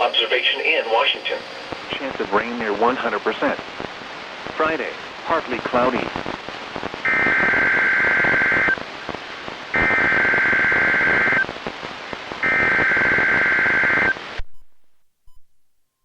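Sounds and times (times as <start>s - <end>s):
radio static: 0.0s - 14.8s.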